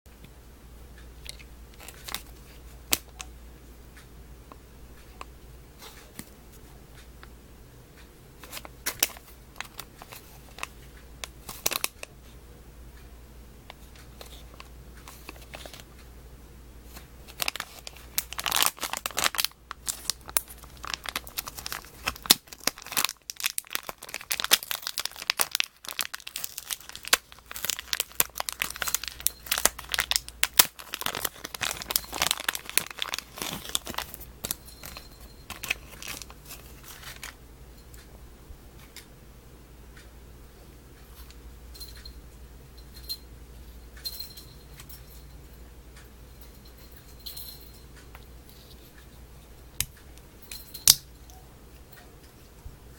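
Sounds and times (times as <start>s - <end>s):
packaging crinkling and tearing: 11.4s - 12.0s, 16.9s - 37.4s.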